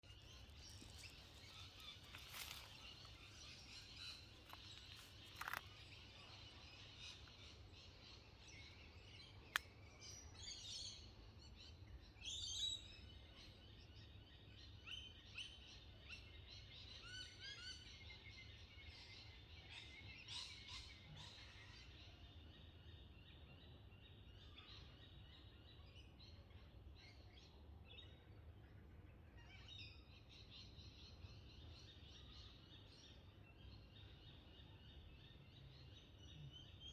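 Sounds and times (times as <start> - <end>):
birds chirping and trilling: 0.1 - 11.0.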